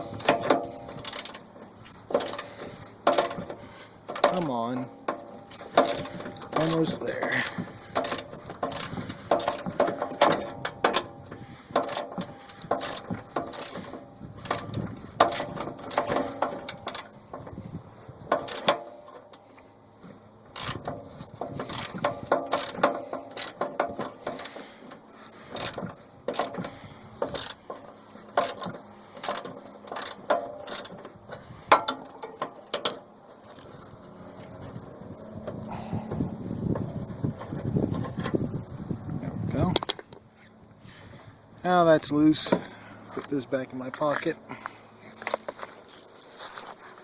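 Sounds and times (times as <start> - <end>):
ratchet wrench clicking: 0.0 - 1.5, 2.1 - 4.5, 5.1 - 11.1, 11.7 - 17.1, 18.3 - 19.3, 20.5 - 24.6, 25.5 - 27.6, 28.4 - 31.1.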